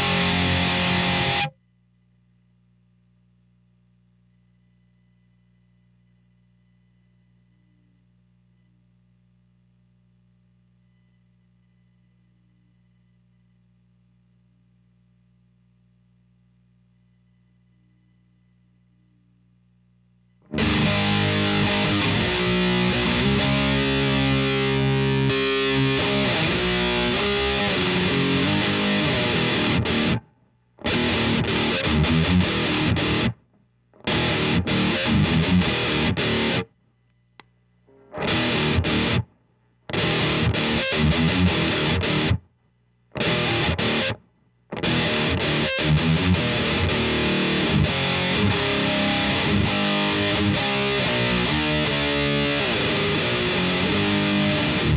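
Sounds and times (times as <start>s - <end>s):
distorted electric guitar riffs: 0.0s - 1.6s, 20.4s - 36.7s, 37.9s - 42.4s, 43.1s - 54.9s
faint low hum: 0.0s - 54.9s.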